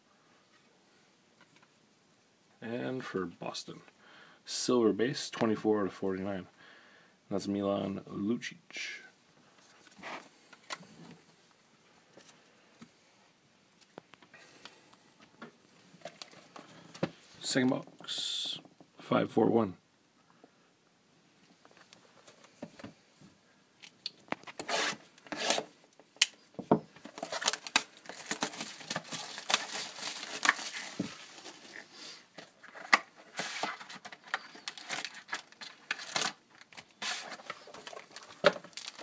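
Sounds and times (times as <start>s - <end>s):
cardboard rustling: 27.0s - 39.0s
wrapper tearing and crinkling: 27.1s - 31.8s, 33.3s - 39.0s.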